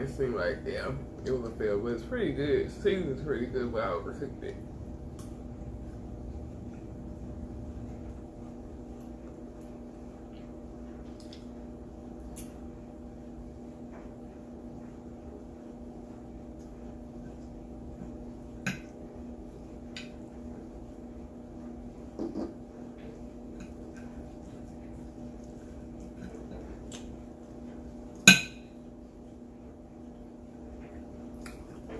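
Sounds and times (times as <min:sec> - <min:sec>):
steady background hum: 0:00.0 - 0:31.9
chewing: 0:23.0 - 0:27.6, 0:30.8 - 0:31.9.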